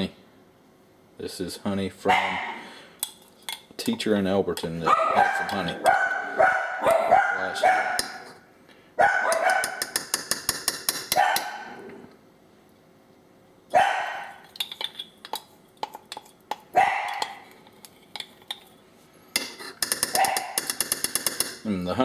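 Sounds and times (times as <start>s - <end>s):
dog barking: 2.1s - 2.6s, 4.8s - 8.2s, 9.0s - 9.8s, 11.2s - 11.8s, 13.7s - 14.4s, 16.7s - 17.4s, 20.1s - 20.6s.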